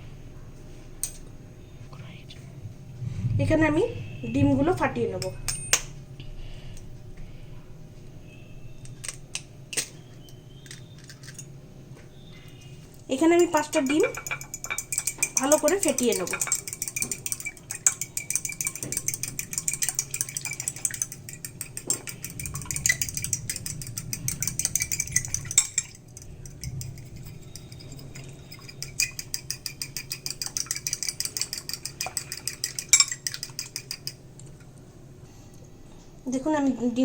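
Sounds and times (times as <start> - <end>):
eggs beaten in a bowl: 13.1 - 34.4.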